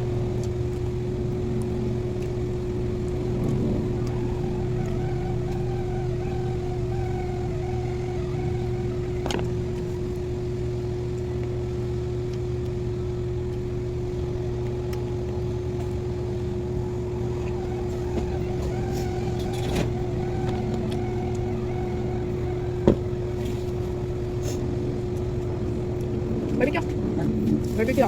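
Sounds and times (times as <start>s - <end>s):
low motor hum: 0.0s - 28.0s.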